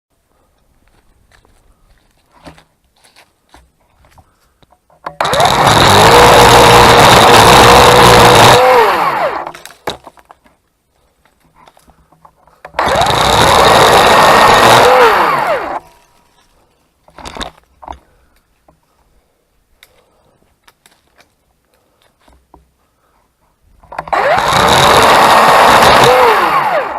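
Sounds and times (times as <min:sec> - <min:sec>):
electric chainsaw whining: 0:05.1 - 0:09.7, 0:12.7 - 0:15.9, 0:23.9 - 0:26.9.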